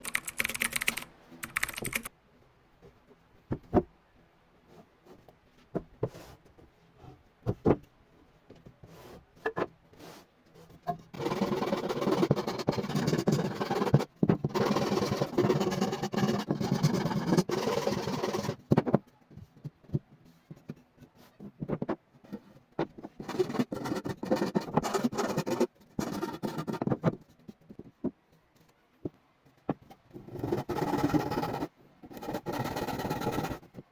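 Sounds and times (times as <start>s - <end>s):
rough steady scraping: 11.1s - 18.7s, 30.1s - 33.8s.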